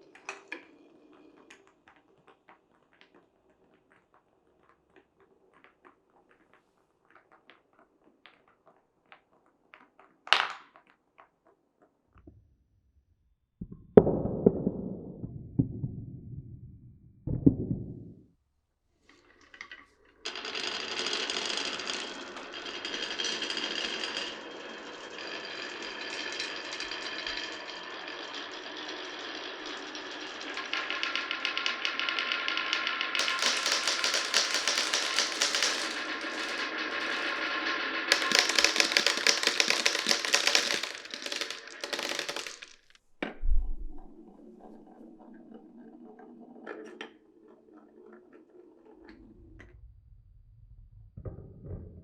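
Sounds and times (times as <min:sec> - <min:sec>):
marbles clacking on wood: 0:00.1 - 0:11.3, 0:30.7 - 0:45.0
marbles rattling down wooden track: 0:19.5 - 0:43.0.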